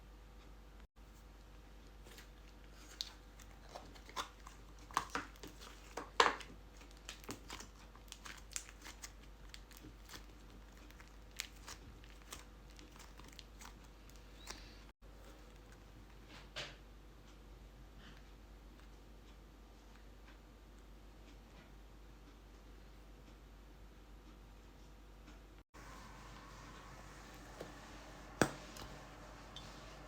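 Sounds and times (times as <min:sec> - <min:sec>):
crinkly play materials handled: 0:01.8 - 0:16.0.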